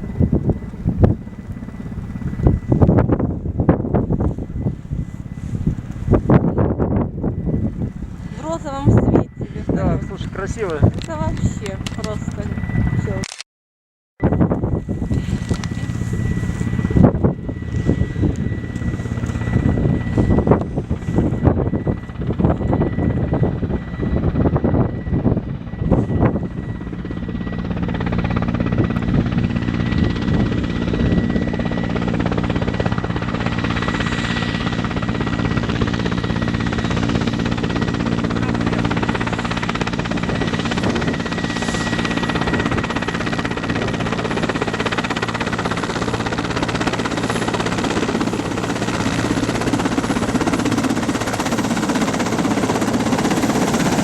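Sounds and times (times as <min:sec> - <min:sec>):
irregular gusty rumble: 0:00.0 - 0:13.2, 0:14.2 - 0:54.0
helicopter engine and rotor hum: 0:00.0 - 0:13.4, 0:14.2 - 0:54.0.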